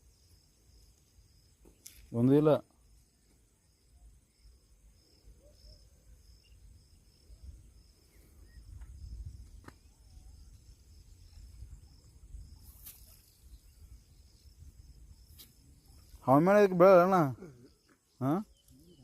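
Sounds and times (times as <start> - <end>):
insects chirping: 0.0 - 19.0.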